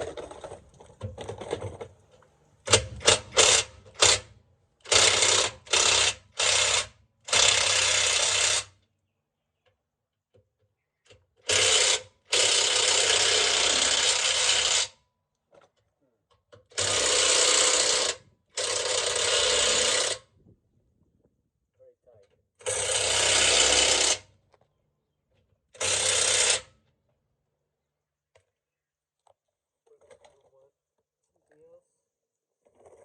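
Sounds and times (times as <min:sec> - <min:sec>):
impact wrench hammering bolt: 0:02.6 - 0:07.7.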